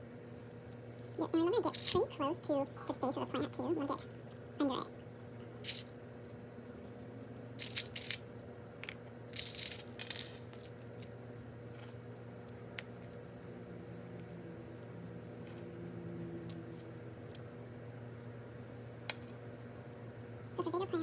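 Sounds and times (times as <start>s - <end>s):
seashells clicking together: 6.9s - 8.2s.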